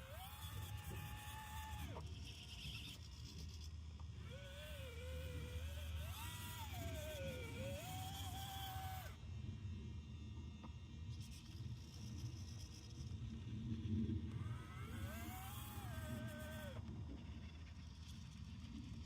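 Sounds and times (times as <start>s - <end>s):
small electric motors whining: 0.0s - 9.6s, 11.0s - 19.0s.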